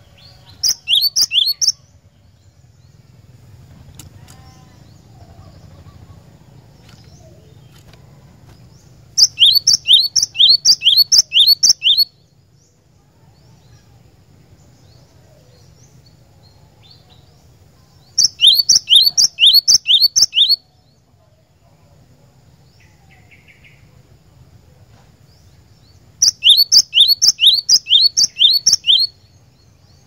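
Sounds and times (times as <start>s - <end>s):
bird singing high ringing notes: 0.0s - 1.9s, 9.2s - 12.1s, 18.0s - 20.6s, 26.2s - 29.4s.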